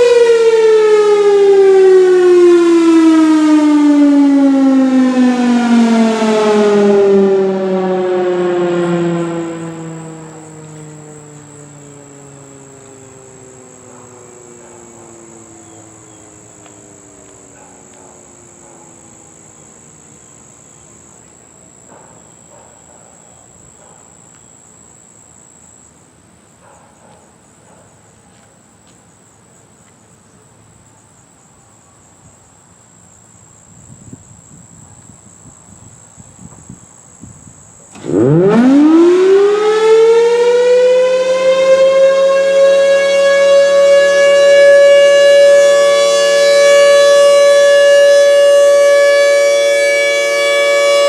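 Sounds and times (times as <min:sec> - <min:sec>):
warning siren winding down: 0:00.0 - 0:21.9, 0:37.8 - 0:51.0
high insect trill: 0:07.3 - 0:38.6.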